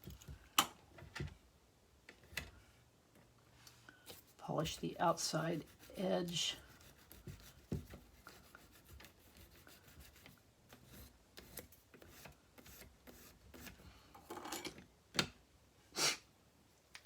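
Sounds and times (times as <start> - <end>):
metal tubing being sanded: 5.2 - 10.3.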